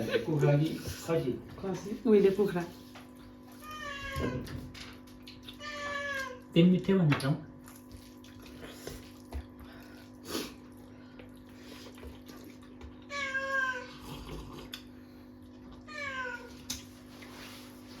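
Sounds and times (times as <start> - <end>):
cat meowing: 3.6 - 4.6, 5.6 - 6.4, 13.1 - 14.0, 15.9 - 16.6.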